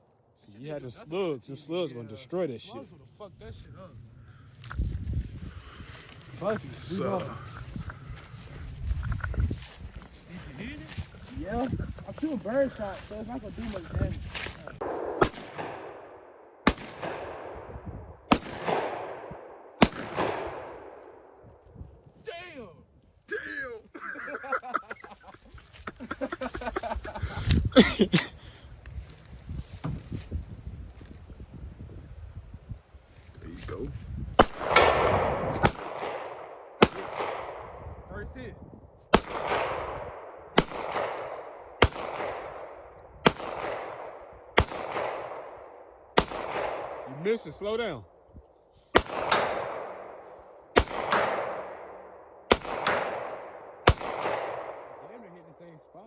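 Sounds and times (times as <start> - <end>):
shotgun shots echoing: 14.8 - 21.4, 34.4 - 37.9, 39.1 - 47.5, 48.9 - 55.5.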